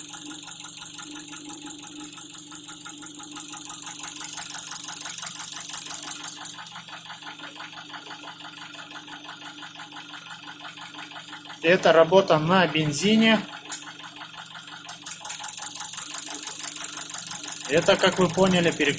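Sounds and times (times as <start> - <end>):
engine knocking: 0.0 - 18.9
gas injectors chattering: 11.6 - 13.8, 14.8 - 18.9.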